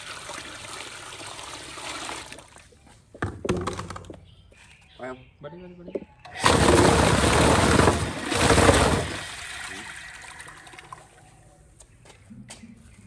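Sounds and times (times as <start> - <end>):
stirring machine rushing churn: 6.4 - 9.8.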